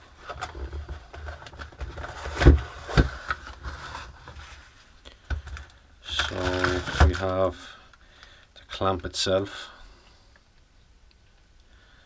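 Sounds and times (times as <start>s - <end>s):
cardboard scraping and rustling: 0.1s - 4.9s, 6.1s - 7.4s.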